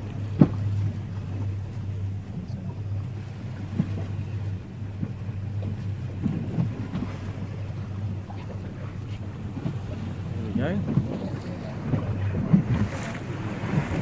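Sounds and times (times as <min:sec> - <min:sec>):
speedboat engine humming: 0:00.0 - 0:14.0.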